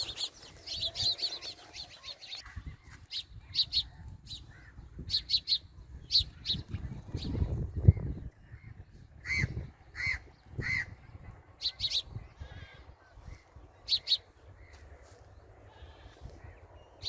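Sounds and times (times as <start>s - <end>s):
harsh bird calls: 0.0s - 2.4s.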